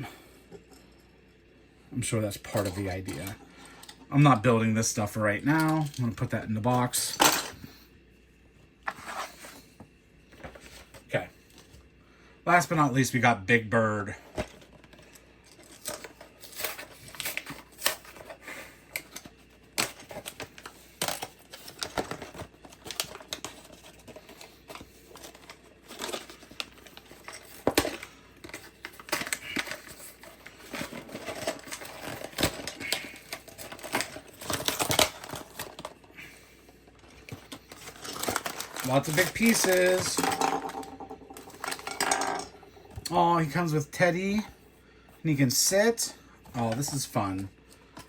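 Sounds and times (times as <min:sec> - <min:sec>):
cardboard and plastic crinkling: 0:10.3 - 0:11.8, 0:14.2 - 0:36.2, 0:36.9 - 0:41.9
plastic parts clicking and rattling: 0:14.3 - 0:36.1, 0:36.9 - 0:42.7.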